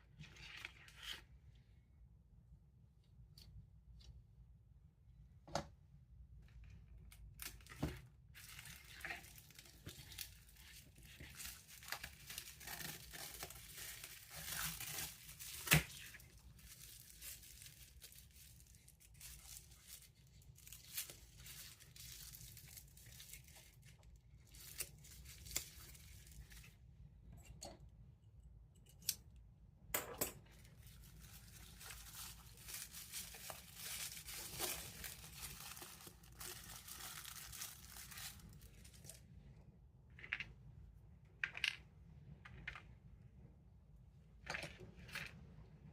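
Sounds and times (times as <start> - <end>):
cardboard and plastic rustling: 7.3 - 26.8, 30.5 - 39.2.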